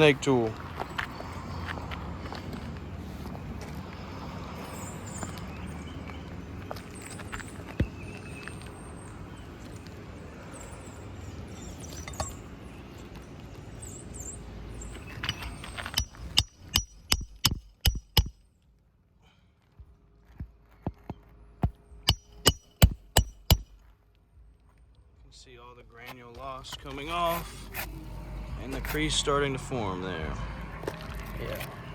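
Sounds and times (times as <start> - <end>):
hammer striking metal tool: 15.3 - 18.4, 22.1 - 23.8.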